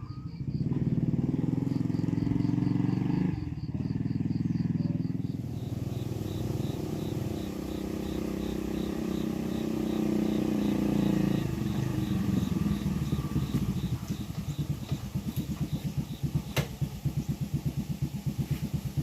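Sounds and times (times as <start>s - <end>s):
small engine running: 0.0s - 19.0s.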